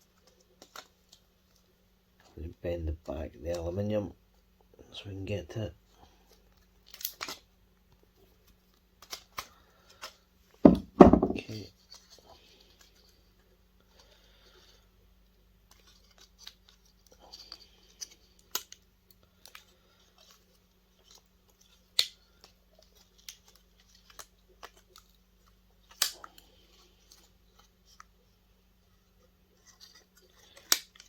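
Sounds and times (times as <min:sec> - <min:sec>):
faint steady hum: 0:00.0 - 0:31.0
sharp knocks: 0:10.7 - 0:11.4.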